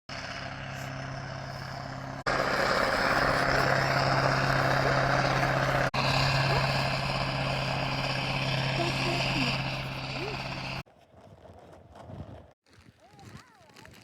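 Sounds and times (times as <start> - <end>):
engine-like drone: 0.1 - 10.8.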